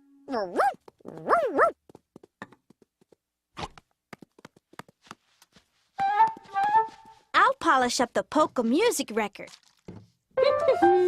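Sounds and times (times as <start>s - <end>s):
cartoon dog yipping: 0.3s - 1.8s.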